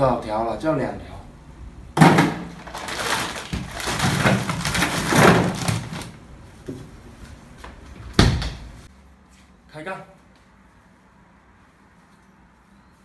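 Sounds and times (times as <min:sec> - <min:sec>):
scraping and rustling: 0:02.0 - 0:08.0.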